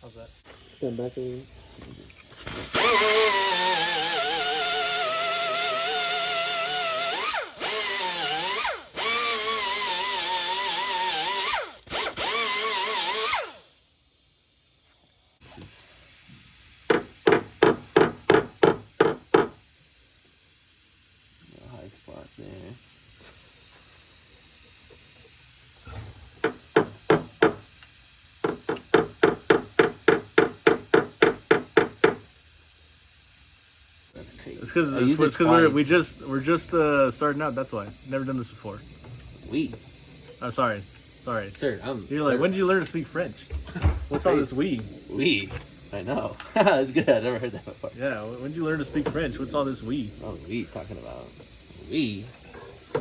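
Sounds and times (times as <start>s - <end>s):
power tool motor whining: 1.8s - 13.8s.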